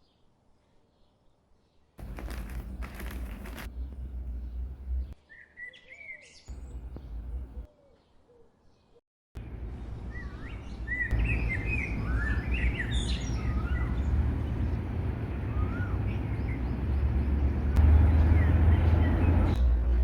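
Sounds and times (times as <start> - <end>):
small birds chirping: 0.9 - 19.6
steady low rumble: 6.5 - 7.7, 9.4 - 19.6.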